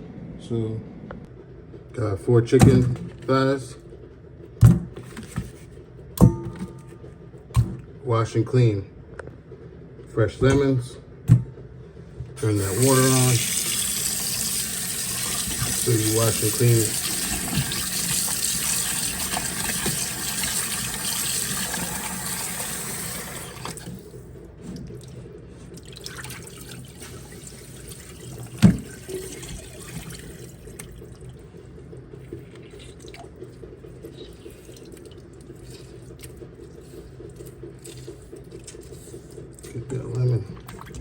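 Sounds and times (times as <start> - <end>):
tap running into sink: 12.6 - 23.9, 28.4 - 30.2.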